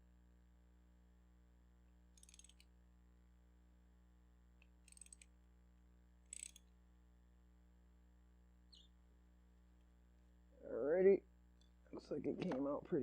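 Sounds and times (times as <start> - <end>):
socket ratchet clicking: 2.2 - 2.6, 4.9 - 5.3, 6.3 - 6.7.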